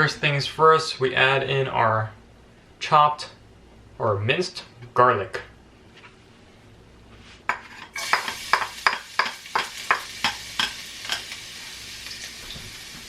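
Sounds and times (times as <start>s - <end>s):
utensil stirring in wok: 7.5s - 12.4s
garlic sizzling in oil: 7.8s - 13.0s.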